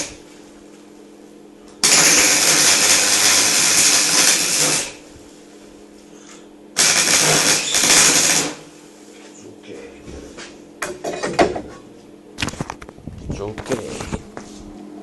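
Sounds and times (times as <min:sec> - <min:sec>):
welding arc crackling: 0:00.0 - 0:00.2, 0:01.7 - 0:05.1, 0:06.8 - 0:08.7
welder humming: 0:00.0 - 0:09.5.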